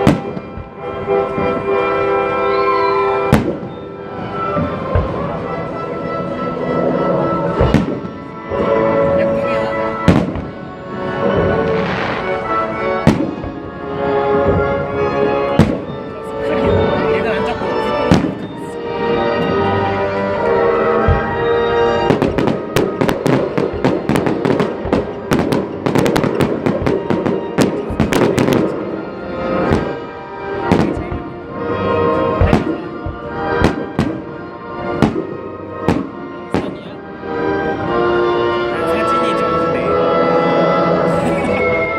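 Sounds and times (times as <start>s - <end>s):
fireworks crackling: 0.0s - 39.2s
music: 0.0s - 41.9s
sharp firework bang: 13.0s - 13.6s.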